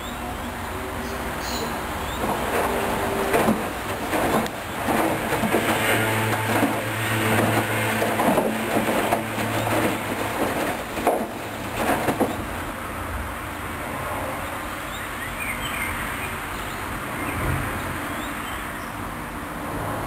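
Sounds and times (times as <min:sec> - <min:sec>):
wet laundry tumbling and knocking: 0:02.3 - 0:12.6.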